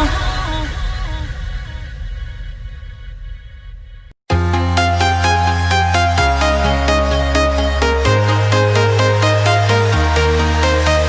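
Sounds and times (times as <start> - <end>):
electronic pop music: 4.3 - 11.0.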